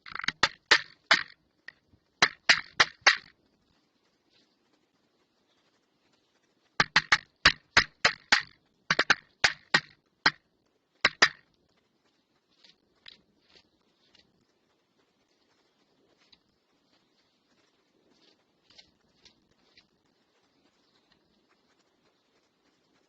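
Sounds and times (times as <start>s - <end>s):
bird knocking on camera housing: 6.8s - 9.9s.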